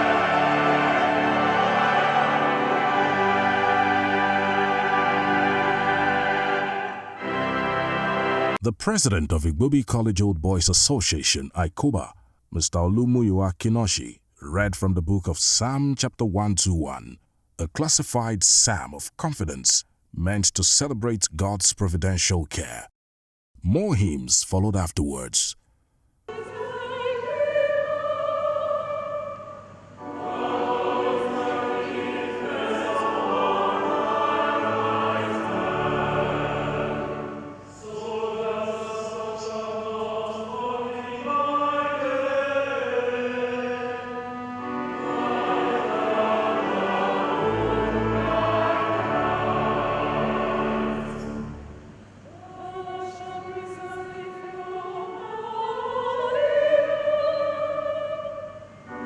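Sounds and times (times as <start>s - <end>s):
choir singing a hymn: 0.0s - 8.6s, 26.3s - 59.0s.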